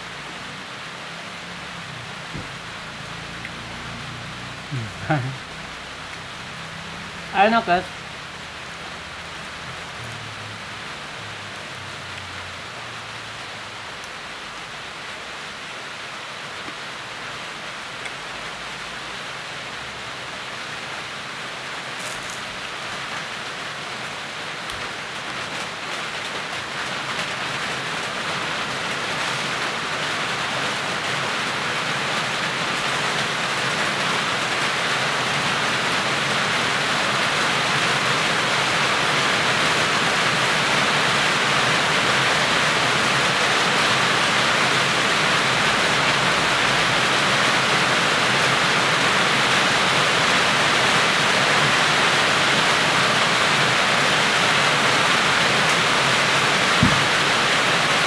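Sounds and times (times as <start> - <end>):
rain falling: 0.0 - 58.0.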